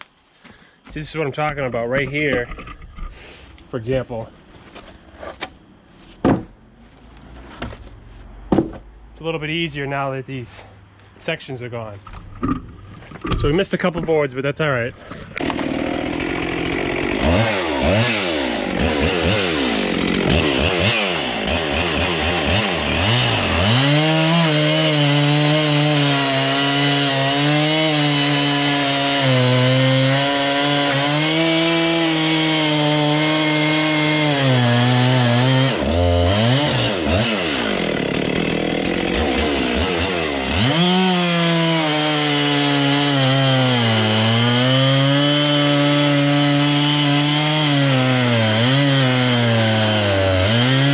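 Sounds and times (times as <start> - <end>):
chainsaw revving and cutting wood: 15.3 - 50.9.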